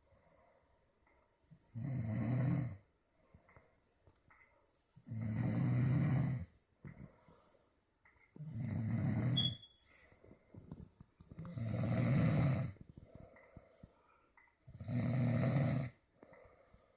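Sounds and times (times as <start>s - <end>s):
deep rasping snores: 1.8s - 2.8s, 5.1s - 6.5s, 8.4s - 9.4s, 11.4s - 12.8s, 14.7s - 16.0s.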